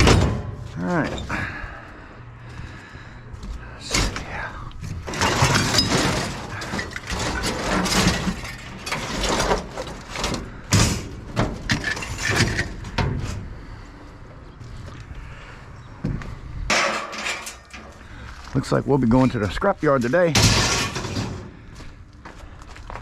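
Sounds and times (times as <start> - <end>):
scrap metal clanking: 0.0 - 1.4, 5.0 - 13.8, 16.7 - 18.6, 20.0 - 21.7.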